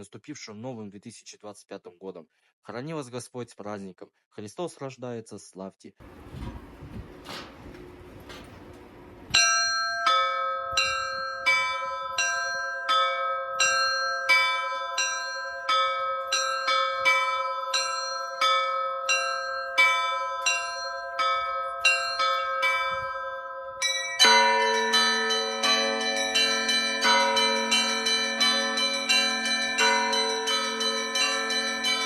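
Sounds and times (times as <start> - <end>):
deep heavy church bells: 9.3 - 32.0
small high church bells: 9.3 - 32.0.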